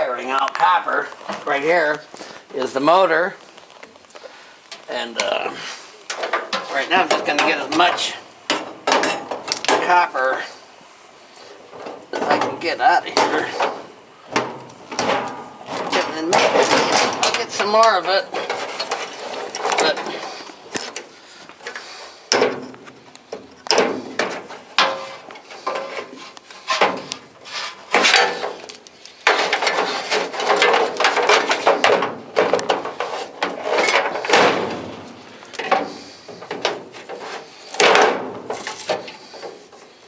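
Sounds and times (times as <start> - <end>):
metal knocks and clanks: 6.1 - 10.0, 11.7 - 20.2, 29.3 - 39.2.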